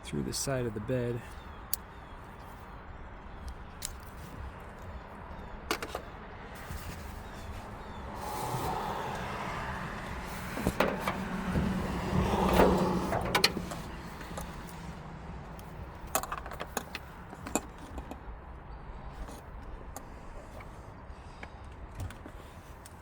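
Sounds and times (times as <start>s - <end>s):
parts clicking and knocking: 5.6s - 6.1s, 8.5s - 18.3s.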